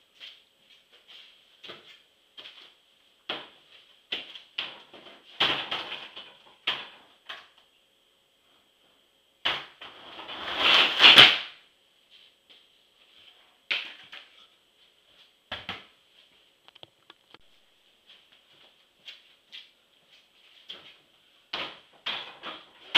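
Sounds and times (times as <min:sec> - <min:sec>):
skateboard wheels rolling: 0:09.9 - 0:11.4.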